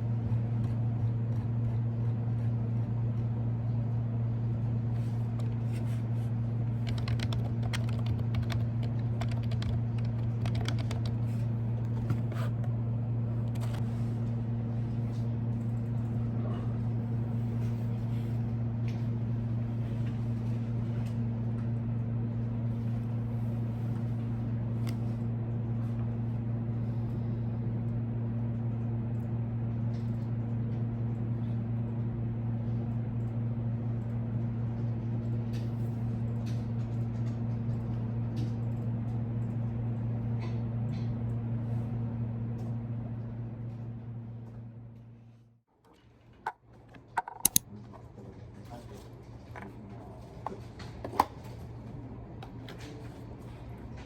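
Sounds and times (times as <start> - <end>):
steady low hum: 0.0 - 45.7
computer keyboard typing: 6.8 - 11.3.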